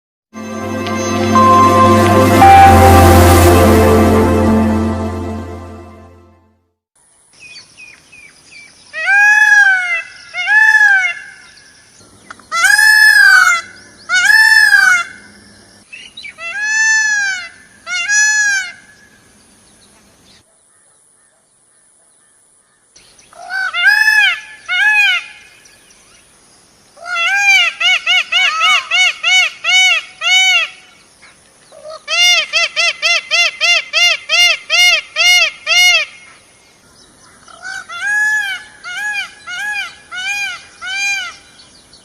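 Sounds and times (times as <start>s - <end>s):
faint steady high tone: 0.4s - 6.4s
peacock wailing calls: 12.5s - 15.2s.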